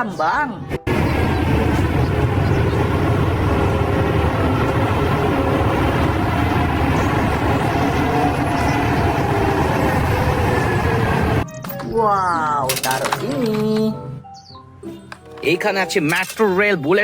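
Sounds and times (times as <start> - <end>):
heavy vehicle engine rumbling: 0.8 - 11.4.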